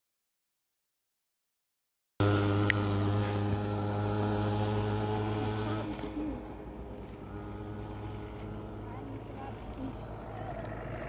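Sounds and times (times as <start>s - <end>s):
engine running low hum: 2.2s - 11.0s.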